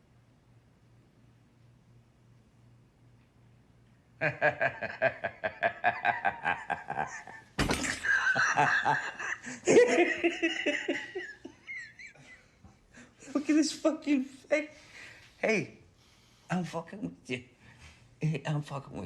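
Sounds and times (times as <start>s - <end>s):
person laughing: 4.2s - 12.4s.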